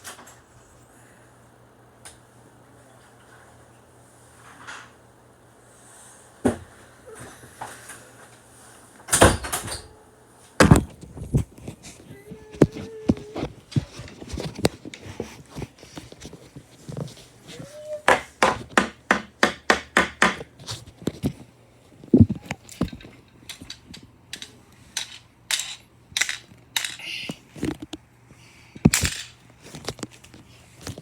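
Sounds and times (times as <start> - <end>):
plastic pieces clattering: 22.4 - 27.1.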